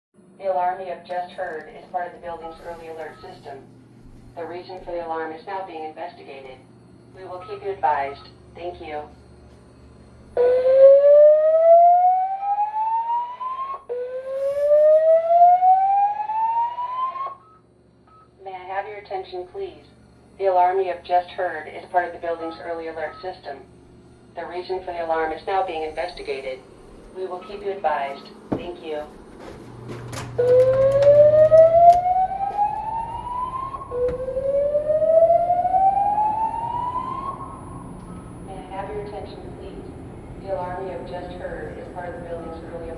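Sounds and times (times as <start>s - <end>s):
fire alarm whooping tone: 10.0s - 18.3s, 30.1s - 38.5s.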